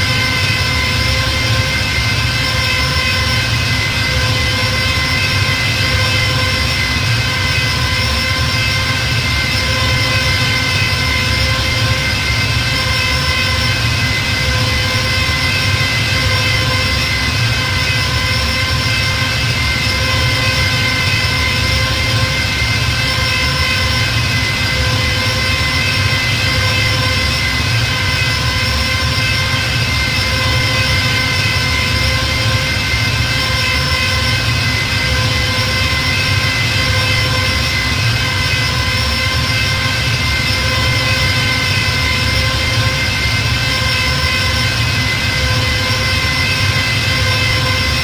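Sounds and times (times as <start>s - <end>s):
spaceship engine drone: 0.0s - 48.0s.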